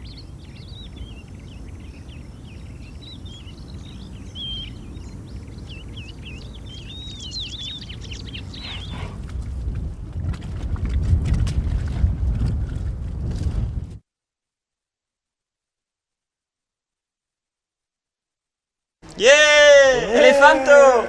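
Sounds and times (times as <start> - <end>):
birds chirping and warbling: 0.0 - 9.3.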